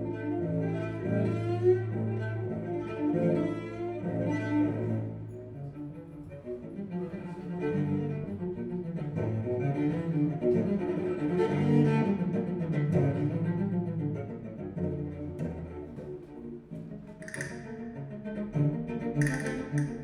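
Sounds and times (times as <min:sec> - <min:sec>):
bowed low strings over loudspeakers: 0:06.4 - 0:20.0.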